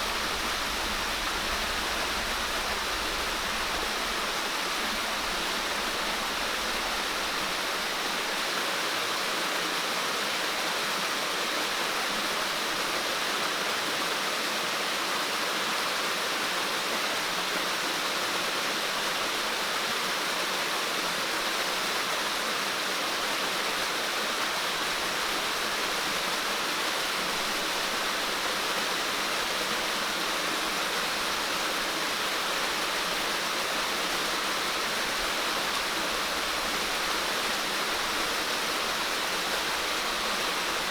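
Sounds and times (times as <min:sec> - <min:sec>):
water rushing: 0:00.0 - 0:09.4, 0:22.7 - 0:40.9.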